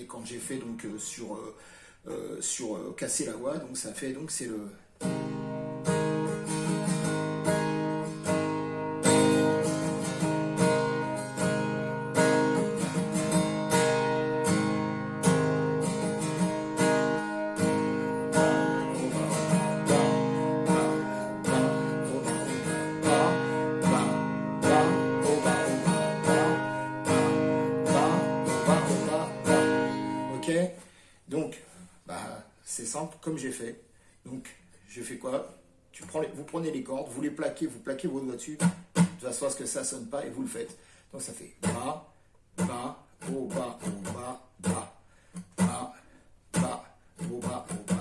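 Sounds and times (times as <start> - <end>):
acoustic guitar strumming: 5.0 - 30.7, 38.6 - 39.2, 41.6 - 41.9, 42.6 - 45.9, 46.5 - 48.0.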